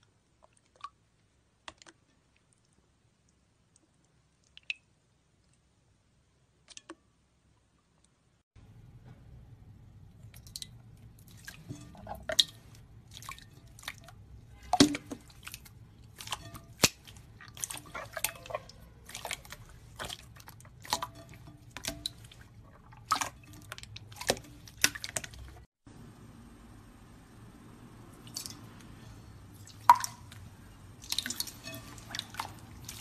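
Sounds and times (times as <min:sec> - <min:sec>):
slime squelching and popping: 0:10.2 - 0:25.7.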